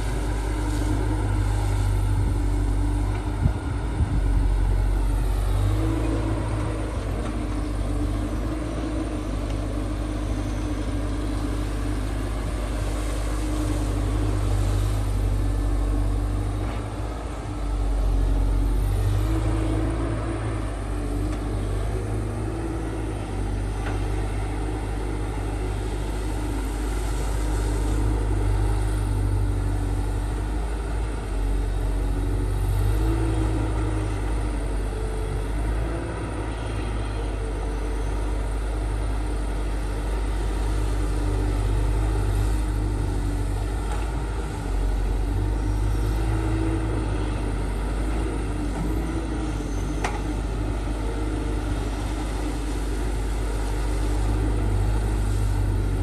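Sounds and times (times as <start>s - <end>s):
heavy machinery diesel engine rumble: 0.0s - 56.0s.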